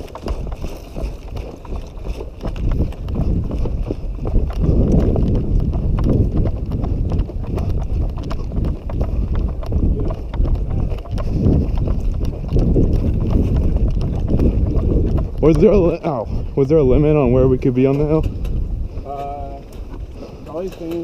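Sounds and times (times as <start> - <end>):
gear rattling: 0.0 - 16.1
footsteps on rough ground: 0.0 - 21.0
wind buffeting microphone: 0.0 - 21.0.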